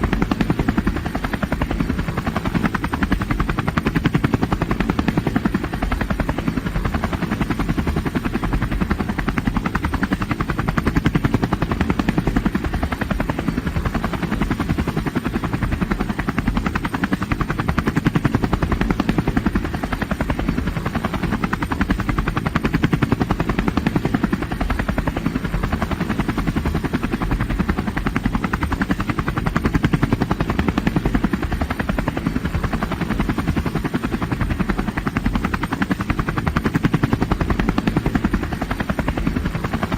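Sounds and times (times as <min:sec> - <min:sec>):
helicopter rotor blades chopping: 0:00.0 - 0:39.9.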